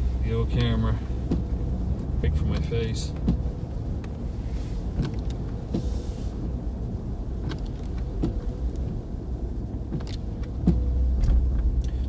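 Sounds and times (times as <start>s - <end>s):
car driving rumble: 0.0s - 12.0s.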